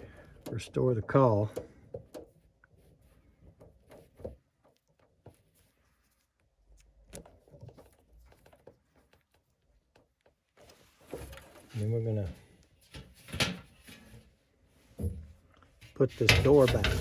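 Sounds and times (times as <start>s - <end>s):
faint clicks and knocks: 0.0s - 14.3s.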